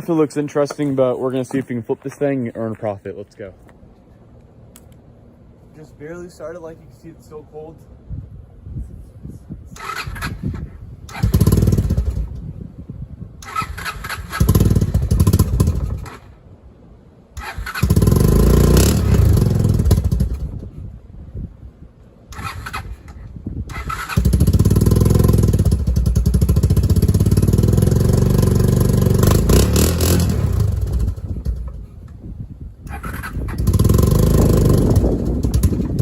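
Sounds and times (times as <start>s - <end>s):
quad bike engine revving: 9.8s - 12.4s, 13.4s - 16.3s, 17.4s - 20.7s, 22.3s - 31.9s, 32.9s - 36.0s.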